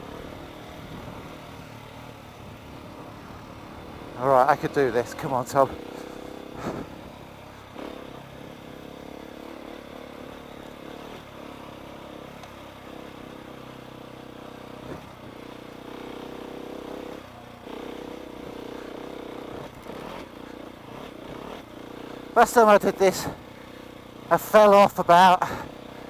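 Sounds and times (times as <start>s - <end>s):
motorcycle engine running: 0.0s - 26.0s.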